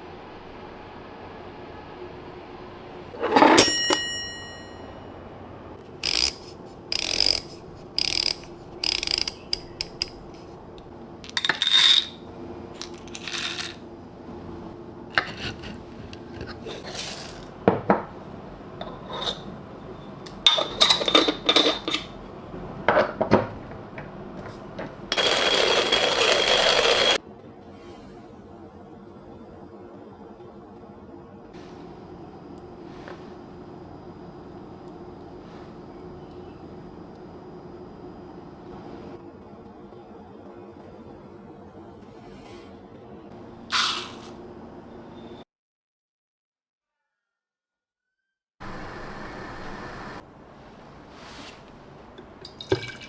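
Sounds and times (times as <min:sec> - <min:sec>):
metallic clink: 0:06.0 - 0:10.2
grinder parts clicking and clattering: 0:06.0 - 0:10.5, 0:11.2 - 0:13.8, 0:20.3 - 0:22.2, 0:25.1 - 0:27.2.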